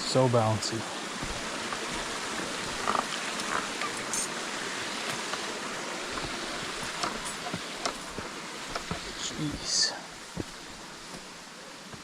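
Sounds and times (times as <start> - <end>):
river water rushing: 0.0 - 12.0
faint knocks: 6.1 - 9.2.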